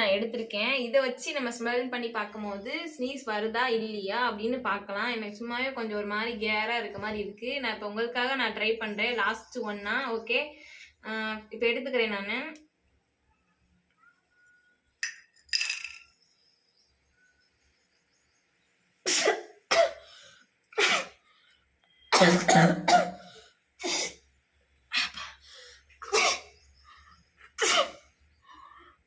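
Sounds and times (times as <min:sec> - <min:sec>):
woman sneezing and coughing: 0:19.1 - 0:20.0, 0:20.8 - 0:21.2, 0:22.1 - 0:24.2, 0:26.0 - 0:26.6, 0:27.6 - 0:28.1.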